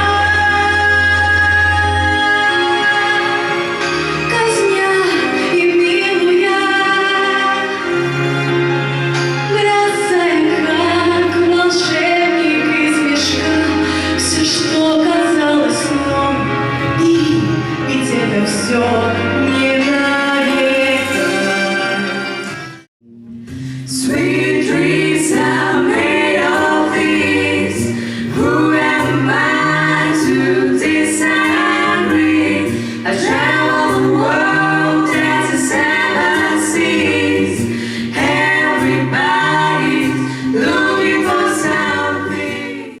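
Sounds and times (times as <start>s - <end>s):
instrumental accompaniment: 0.0s - 43.0s
bass line: 23.0s - 42.8s
several voices singing: 23.9s - 43.0s.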